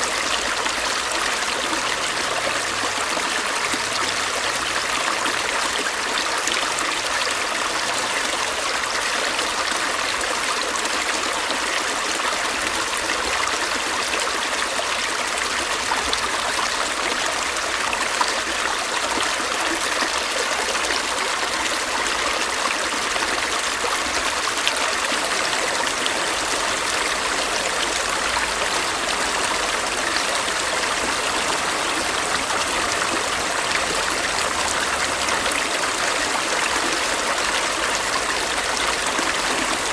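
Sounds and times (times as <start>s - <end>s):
stream running over rocks: 0.0s - 39.9s.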